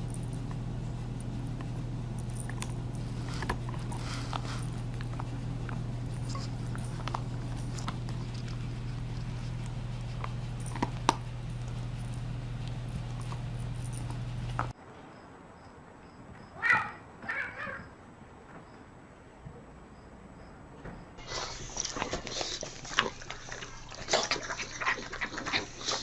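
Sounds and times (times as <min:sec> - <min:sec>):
steady low hum: 0:00.0 - 0:16.4.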